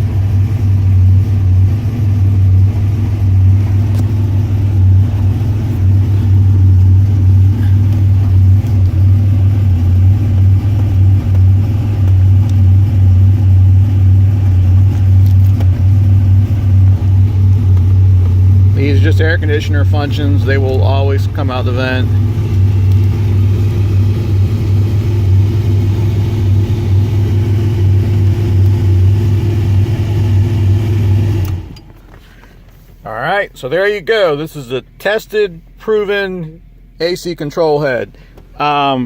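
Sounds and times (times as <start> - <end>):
car engine humming: 0.0 - 39.0
blower fan air blowing: 2.4 - 33.0.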